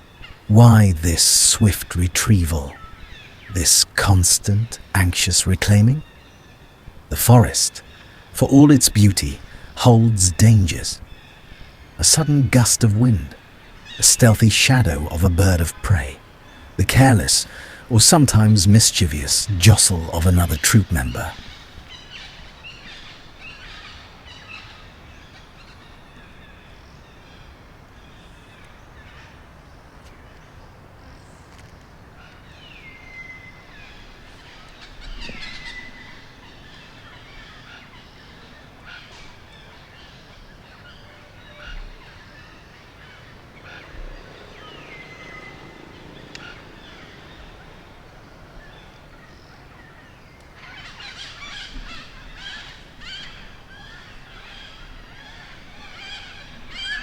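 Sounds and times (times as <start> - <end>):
birds chirping: 0.0 - 57.0
steady background hiss: 0.0 - 57.0
whistled bird calls: 32.5 - 57.0.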